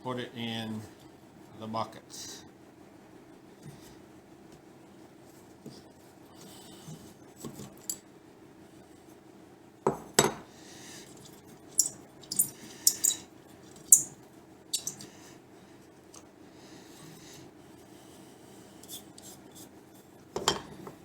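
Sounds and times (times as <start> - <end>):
metal parts clinking in bucket: 11.8 - 14.1, 14.7 - 15.1.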